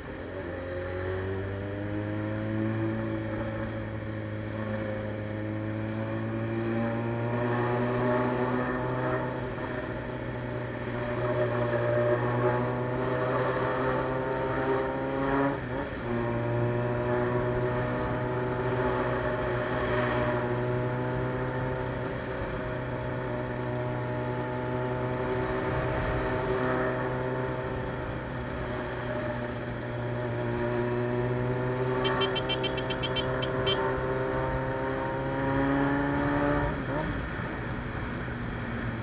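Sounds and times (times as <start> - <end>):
motorcycle engine running: 31.2 - 34.7
rapid high beeping: 32.0 - 33.8.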